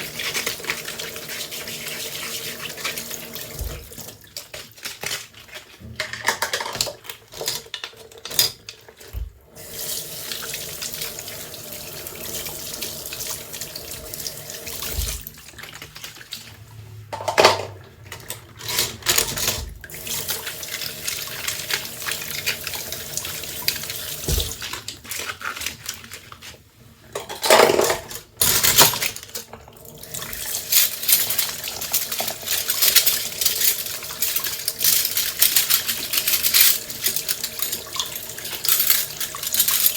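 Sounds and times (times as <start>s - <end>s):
tap water running into sink: 0.0s - 4.9s, 7.8s - 25.0s, 29.0s - 39.9s
dishes clinking: 17.1s - 18.2s.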